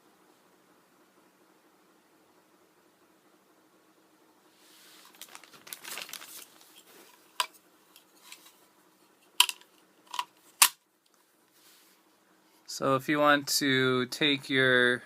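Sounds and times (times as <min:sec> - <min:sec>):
packaging crinkling: 0:05.0 - 0:07.6.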